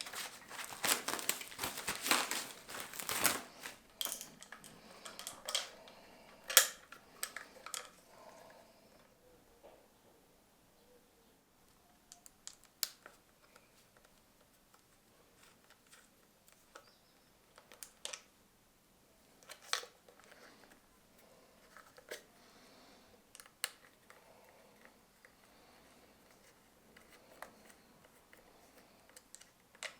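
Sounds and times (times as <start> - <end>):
faint handling noise: 0.0 - 8.5.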